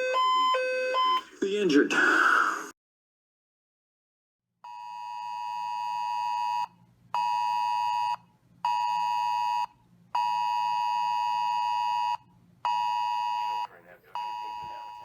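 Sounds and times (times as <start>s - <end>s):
emergency alert tone beeping: 0.0s - 1.3s, 13.5s - 15.0s.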